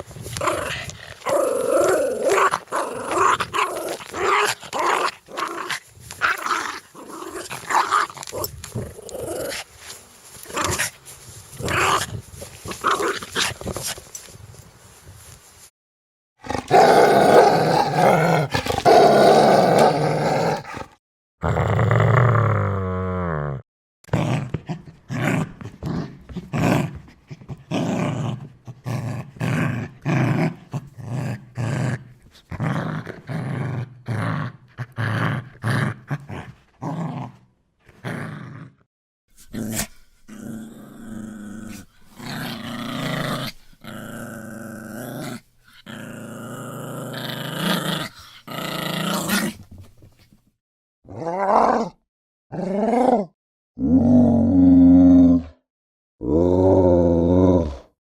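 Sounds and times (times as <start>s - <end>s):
dogs growling: 16.4s - 23.0s.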